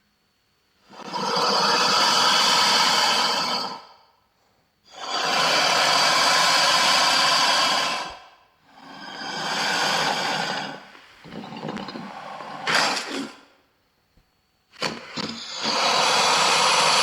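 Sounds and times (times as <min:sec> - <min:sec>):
creature breathy hisses: 0:15.4 - 0:17.0.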